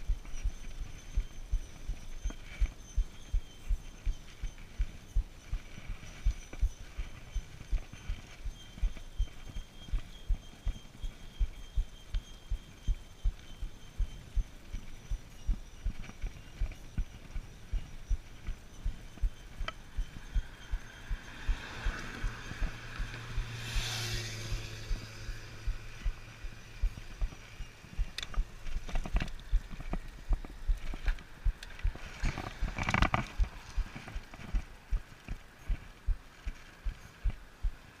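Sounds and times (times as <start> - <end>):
tape ticking on bike wheel: 0.0 - 38.0
passing vehicle: 19.8 - 29.9.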